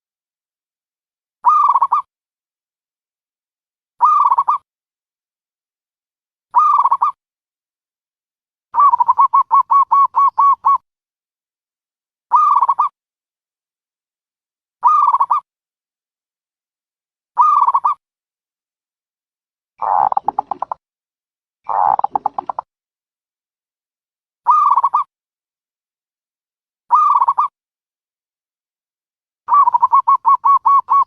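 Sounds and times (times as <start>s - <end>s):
dove cooing: 8.8s - 10.8s, 19.8s - 20.8s, 21.7s - 22.6s, 29.5s - 31.0s.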